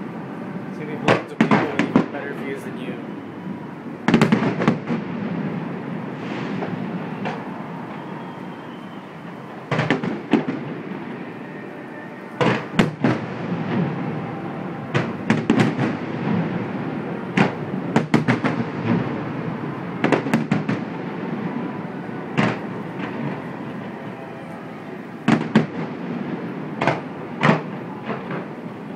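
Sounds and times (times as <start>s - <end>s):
continuous fireworks rumble: 0.0s - 28.9s
firework shells bursting: 4.1s - 10.9s.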